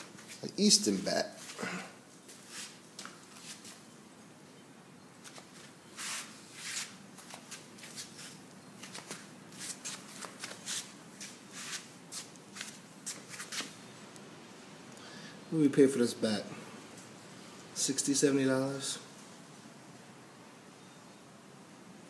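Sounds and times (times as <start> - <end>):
faint steady hiss: 0.0 - 22.0
short scrapes and rustles: 2.3 - 3.8, 5.2 - 13.8.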